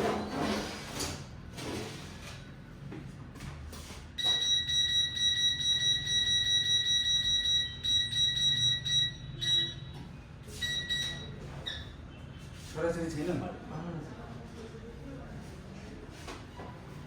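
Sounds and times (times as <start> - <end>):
high-pitched buzzer tone: 4.2 - 12.0.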